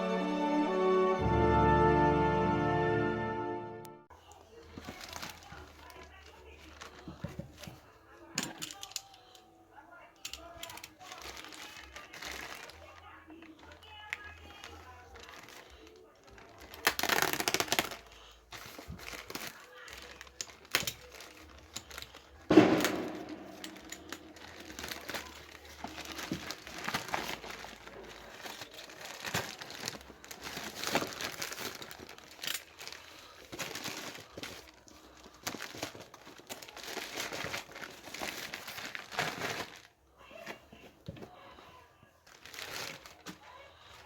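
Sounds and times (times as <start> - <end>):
packaging crinkling and rustling: 4.5 - 9.4, 10.2 - 41.4, 42.1 - 44.0
sharp knock: 22.5 - 23.7.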